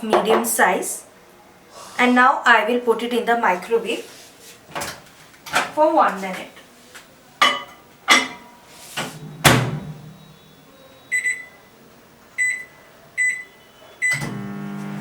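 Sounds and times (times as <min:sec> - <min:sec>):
microwave door thudding shut: 0:09.4 - 0:10.0.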